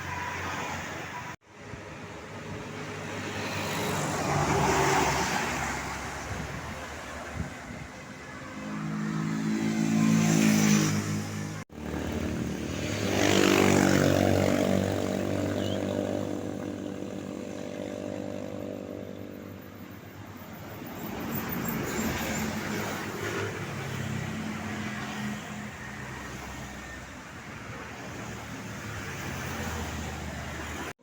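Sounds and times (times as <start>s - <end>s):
tour buses passing: 0.0s - 31.0s.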